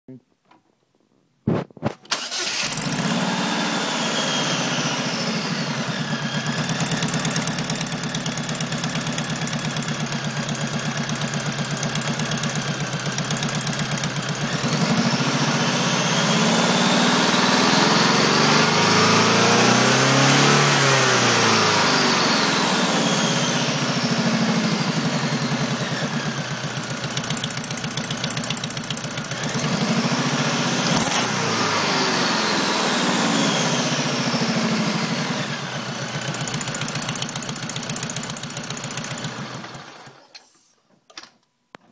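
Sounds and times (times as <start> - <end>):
weird engine noise: 2.1 - 40.1
car engine idling: 5.7 - 16.2, 22.8 - 29.4, 35.6 - 39.6.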